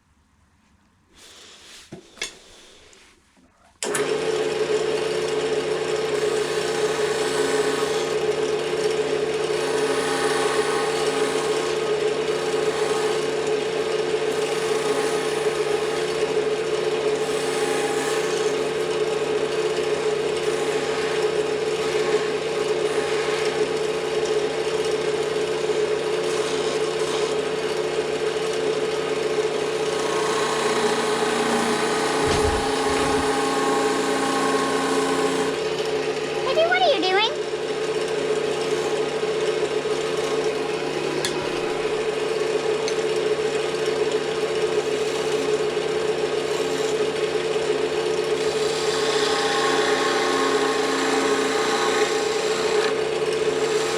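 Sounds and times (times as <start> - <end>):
wood lathe humming: 3.8 - 53.9
turning tool scraping wood: 6.0 - 36.4, 38.0 - 43.0, 44.3 - 47.4, 48.3 - 53.9.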